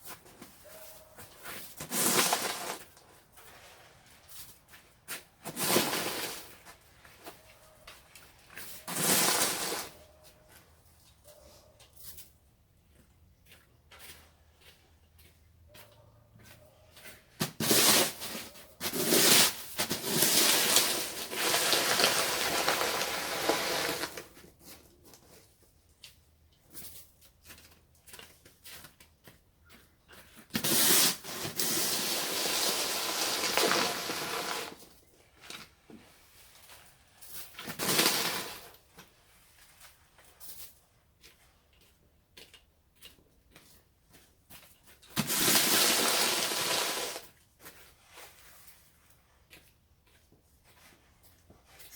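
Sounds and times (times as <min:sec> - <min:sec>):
snow shovel scraping snow: 0:01.7 - 0:02.9, 0:05.4 - 0:06.6, 0:08.9 - 0:10.1, 0:17.4 - 0:24.4, 0:30.6 - 0:34.9, 0:37.6 - 0:38.8, 0:45.2 - 0:47.3.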